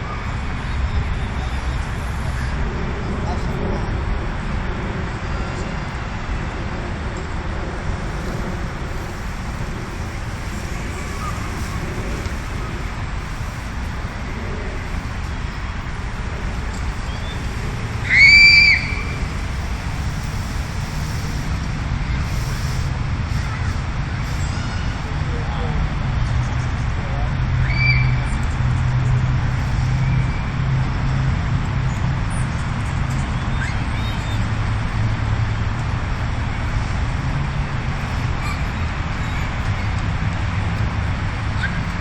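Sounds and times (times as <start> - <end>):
distant road traffic rumble: 0.0 - 42.0
loud high-pitched squeal: 8.0 - 25.0.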